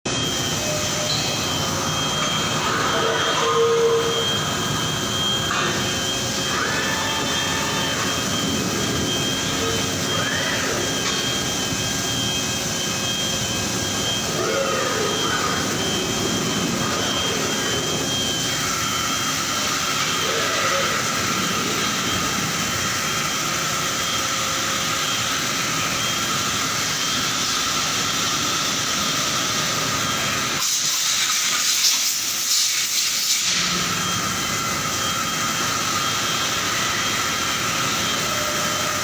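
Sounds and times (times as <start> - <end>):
high machine whine: 0.0 - 39.0
factory machinery din: 0.1 - 39.0.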